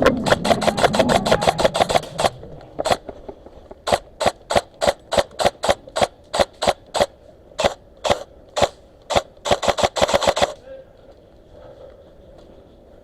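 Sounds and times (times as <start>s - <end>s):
airsoft gun shots: 0.0s - 3.0s, 3.8s - 10.6s.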